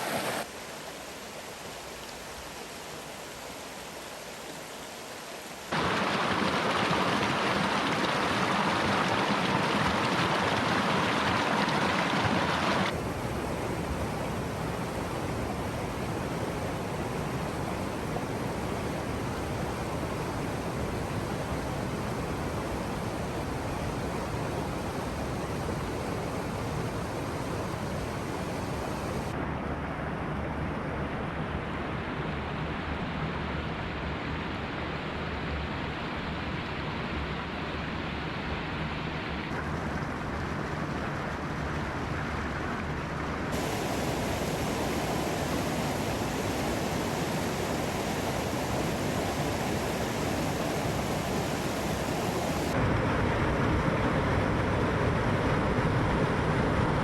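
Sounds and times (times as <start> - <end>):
waterfall rushing: 0.0 - 0.5, 5.5 - 19.9, 21.8 - 29.3, 43.6 - 52.8.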